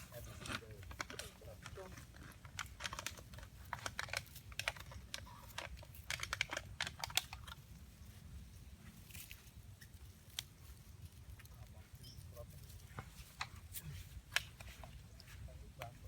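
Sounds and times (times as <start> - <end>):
rapid clicks and crackles: 0.0 - 7.7.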